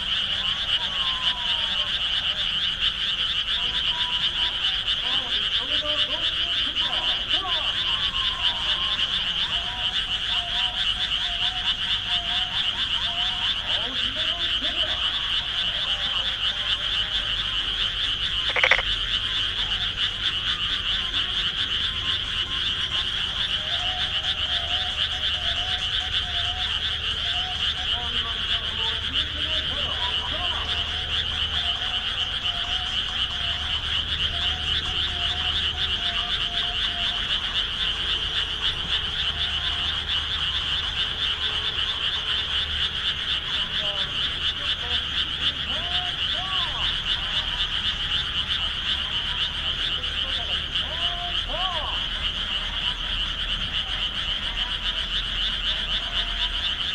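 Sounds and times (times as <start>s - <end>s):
chorus of frogs calling: 0.0s - 56.9s.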